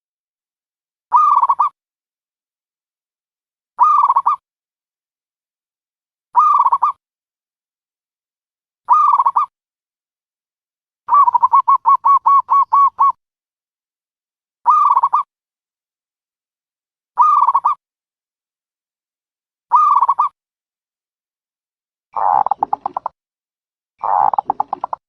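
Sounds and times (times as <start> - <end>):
dove cooing: 11.1 - 13.2, 22.2 - 23.1, 24.0 - 25.0.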